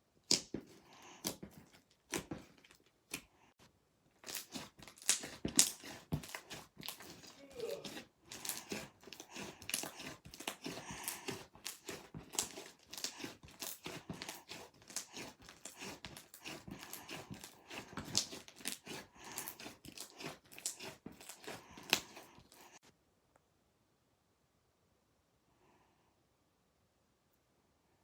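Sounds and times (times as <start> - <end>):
slime crackling and popping: 4.2 - 10.8.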